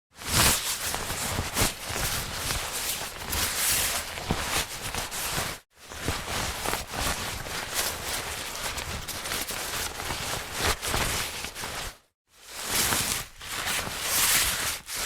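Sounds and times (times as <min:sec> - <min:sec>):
jacket fabric rustling: 0:00.2 - 0:15.0.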